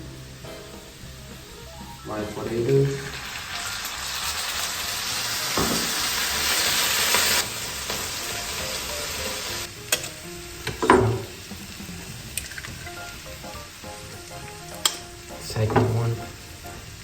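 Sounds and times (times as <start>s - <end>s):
food sizzling in a frying pan: 0.0s - 17.0s
utensil knocking against pan: 5.6s - 6.0s.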